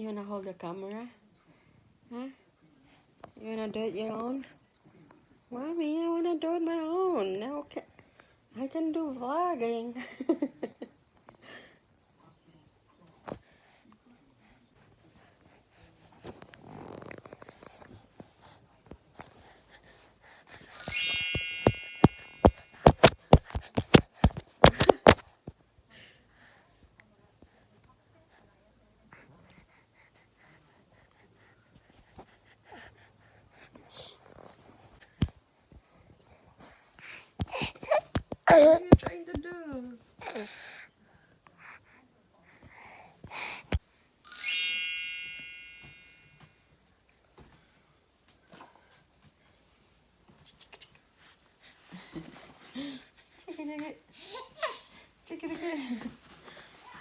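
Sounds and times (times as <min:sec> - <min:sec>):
bright metallic chime: 0:20.8 - 0:23.1, 0:44.3 - 0:46.3
metallic ding: 0:20.8 - 0:23.1, 0:44.3 - 0:46.2
sharp clicks and taps: 0:20.8 - 0:25.2
soft rustles: 0:21.1 - 0:25.2.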